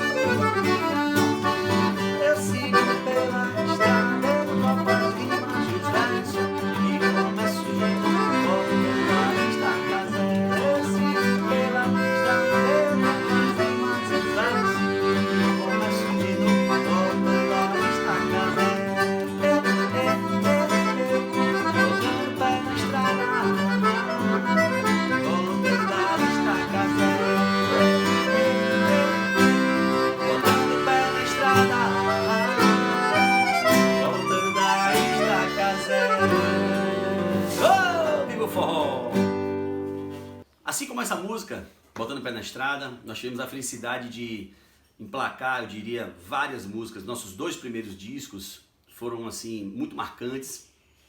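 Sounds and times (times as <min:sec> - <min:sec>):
accordion melody: 0:00.0 - 0:40.4
guitar accompaniment: 0:00.0 - 0:40.5.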